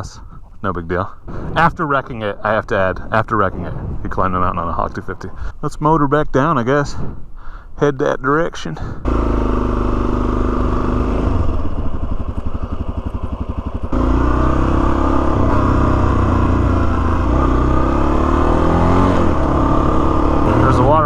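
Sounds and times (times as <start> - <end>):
motorcycle engine running: 9.0 - 21.0.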